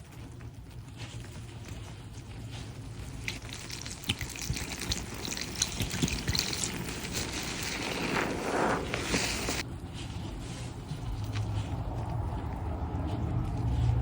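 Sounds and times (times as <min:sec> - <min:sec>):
soapy suds crackling: 0:02.2 - 0:09.7
water pouring out: 0:03.4 - 0:09.6.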